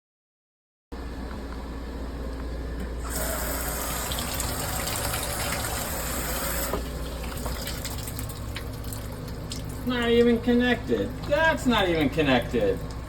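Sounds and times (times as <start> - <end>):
water running and splashing: 3.1 - 13.0.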